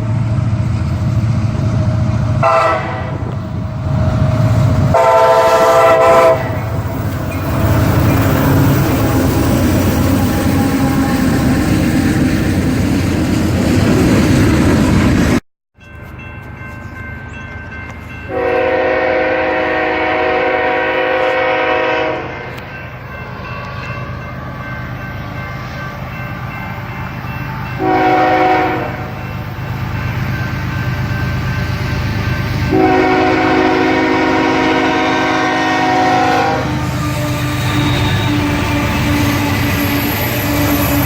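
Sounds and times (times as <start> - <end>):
passing train rumble: 0.0 - 41.0
locomotive air horn: 2.4 - 3.4, 4.9 - 9.2, 10.2 - 11.7, 18.3 - 22.7, 27.8 - 29.2, 32.7 - 41.0.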